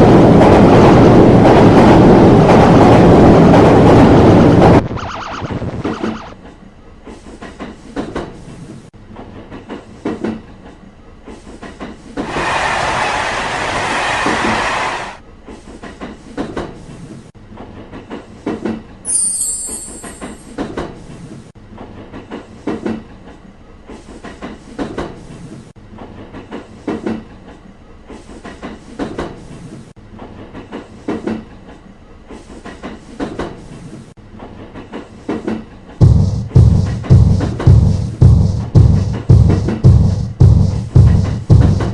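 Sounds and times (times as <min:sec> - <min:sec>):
loud rushing noise: 0:12.3 - 0:15.2.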